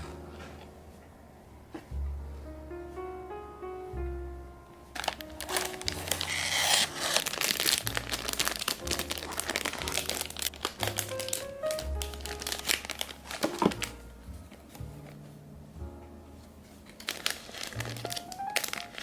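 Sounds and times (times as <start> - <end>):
background music: 0.0 - 19.0
packaging tearing: 5.0 - 14.0, 16.9 - 19.0
packaging crinkling: 5.0 - 15.2, 16.7 - 19.0.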